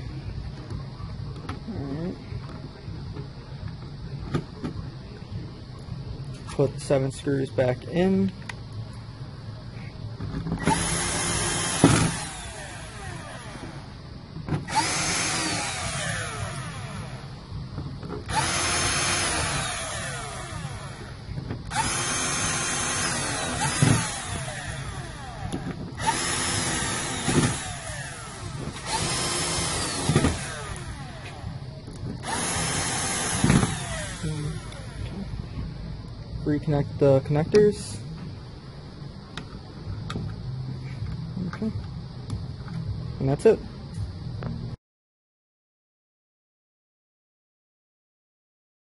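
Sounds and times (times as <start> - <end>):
power screwdriver whining: 10.6 - 13.8, 14.7 - 17.2, 18.3 - 21.1, 21.7 - 31.4, 32.2 - 35.0.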